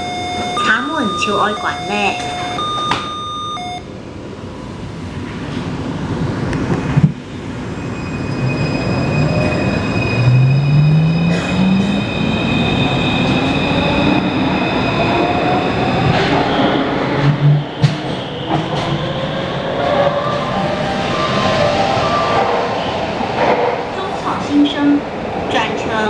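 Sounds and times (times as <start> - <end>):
steady high tones: 0.0 - 3.9
train inverter whining: 0.0 - 26.0.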